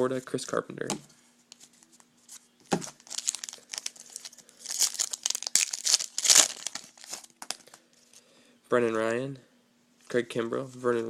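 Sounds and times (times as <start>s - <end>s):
wrapper tearing and crinkling: 2.8s - 7.8s.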